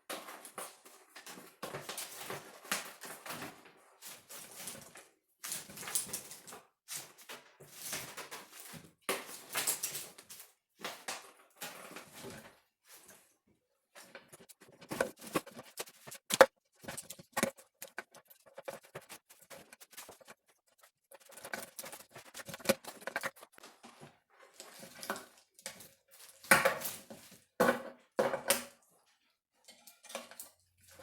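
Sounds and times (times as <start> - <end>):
wires rustling and scraping: 13.9 - 27.4.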